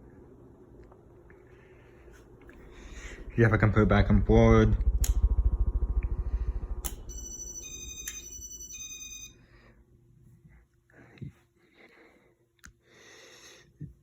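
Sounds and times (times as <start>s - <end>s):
ceiling fan fluttering: 0.0s - 12.4s
electronic ringtone melody: 7.1s - 9.4s.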